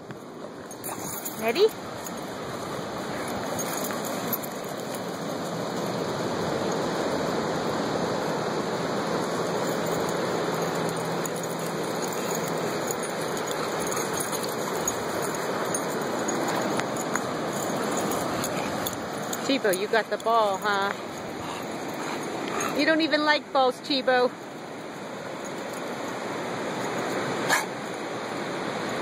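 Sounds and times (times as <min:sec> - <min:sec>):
ocean surf washing onto beach: 0:01.0 - 0:29.0.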